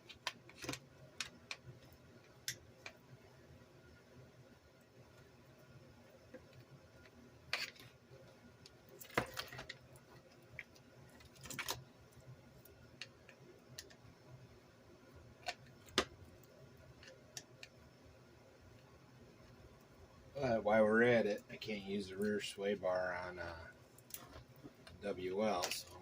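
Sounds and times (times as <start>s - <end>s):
small parts and tools clicking: 0.0s - 3.0s.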